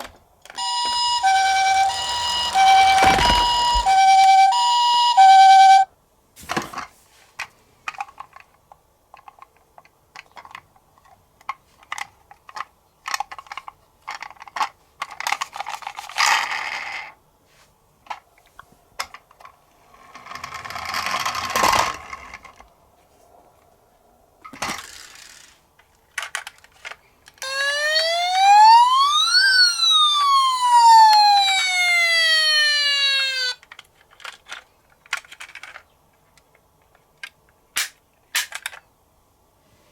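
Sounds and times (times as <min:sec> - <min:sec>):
toy electronic siren wail: 0:00.6 - 0:05.9, 0:27.4 - 0:33.6
toy cars clicking and clattering: 0:06.7 - 0:17.2, 0:18.0 - 0:22.7, 0:24.4 - 0:27.6, 0:32.9 - 0:38.9.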